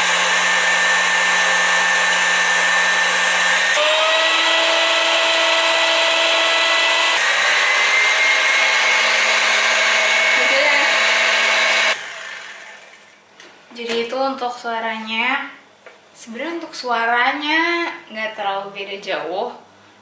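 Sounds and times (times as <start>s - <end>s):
electric hand mixer whining: 0.0s - 13.2s.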